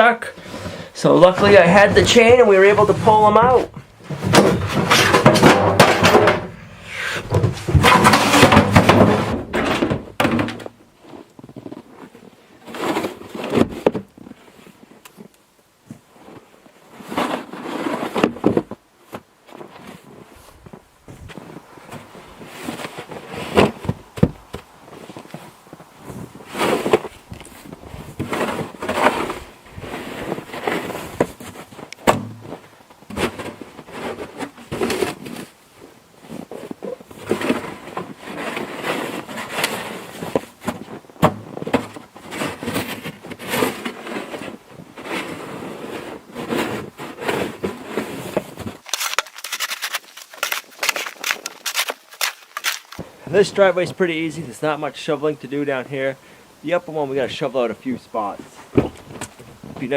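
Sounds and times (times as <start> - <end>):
snow shovel scraping: 0.4 - 9.7, 11.0 - 15.0, 16.1 - 24.0, 24.9 - 35.5, 36.2 - 54.3
sharp clicks and crunches: 36.3 - 53.6.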